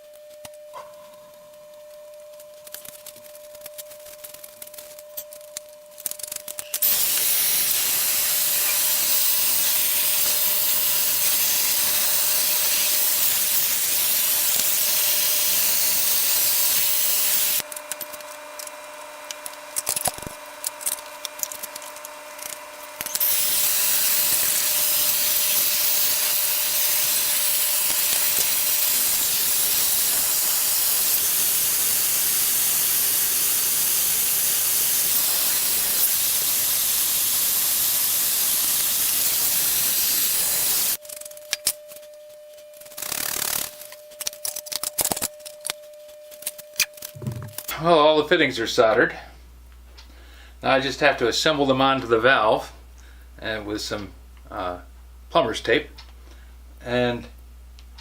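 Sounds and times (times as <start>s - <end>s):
soldering torch hissing: 6.7s - 17.7s, 22.0s - 41.0s.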